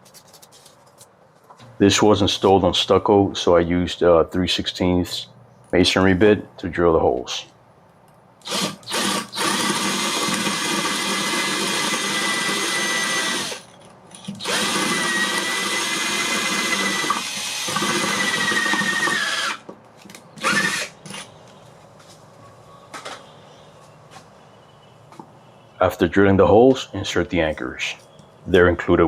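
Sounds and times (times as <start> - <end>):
power drill boring into stucco: 8.4 - 13.7, 14.4 - 19.6, 20.4 - 21.2.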